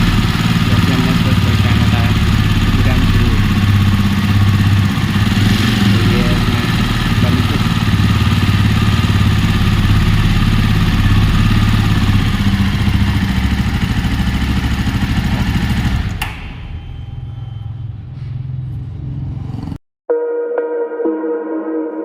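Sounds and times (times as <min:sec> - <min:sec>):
motorcycle engine idling: 0:00.0 - 0:17.3
sharp click: 0:16.2 - 0:16.6.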